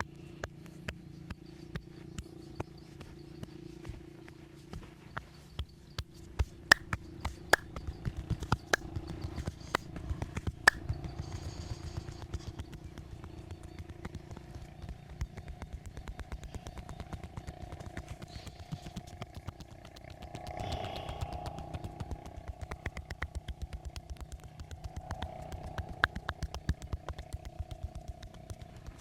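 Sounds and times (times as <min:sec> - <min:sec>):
rapid tapping on skin: 0:04.7 - 0:11.6, 0:12.2 - 0:29.0
slaps on skin: 0:06.4 - 0:07.7, 0:10.7 - 0:10.9.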